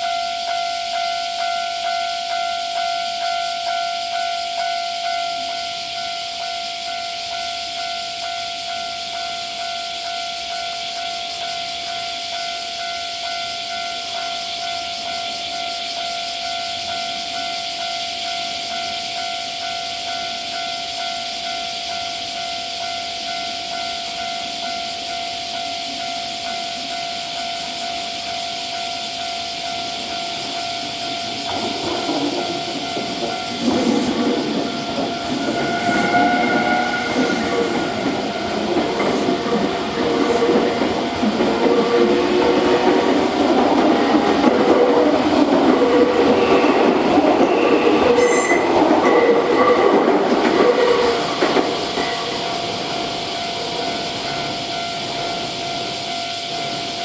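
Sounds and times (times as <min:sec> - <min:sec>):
constant high hiss: 0:00.1 - 0:57.0
train rumble: 0:25.7 - 0:57.0.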